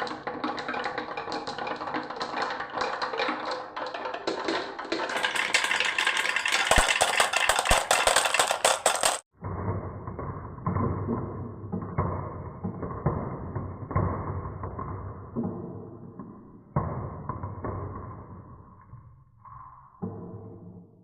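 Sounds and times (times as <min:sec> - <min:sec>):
marbles rolling on wooden run: 0:00.0 - 0:09.3.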